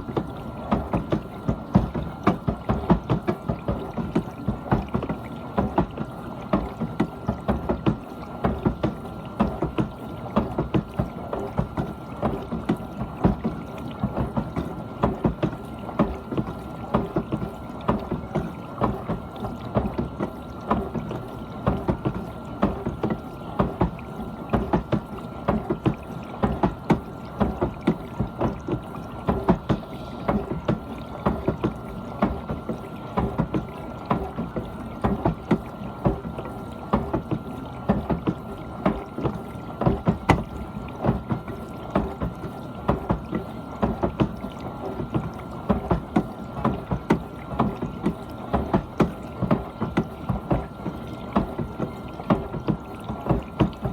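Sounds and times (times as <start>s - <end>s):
pump whine: 0.0s - 53.9s
water splashing inside dishwasher: 0.0s - 53.9s.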